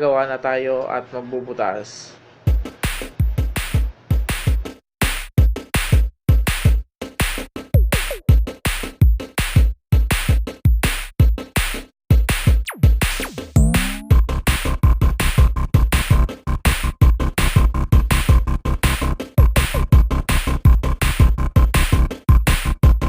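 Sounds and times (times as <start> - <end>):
electronic music with drum machine: 2.5 - 4.8, 12.6 - 14.3.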